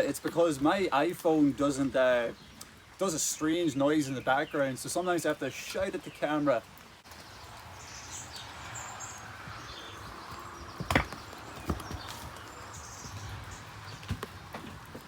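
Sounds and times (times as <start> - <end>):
steady rain falling: 0.0 - 9.9.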